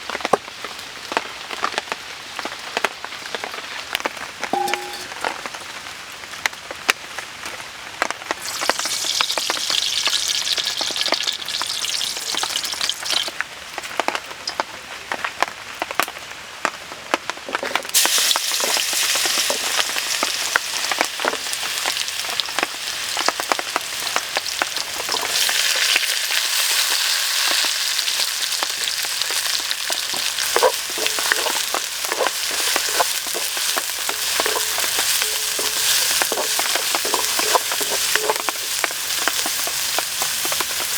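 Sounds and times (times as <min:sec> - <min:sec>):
food sizzling in a pan: 0:04.6 - 0:05.3, 0:08.3 - 0:13.4, 0:17.9 - 0:40.9
utensil scraping a pan: 0:29.3 - 0:40.9.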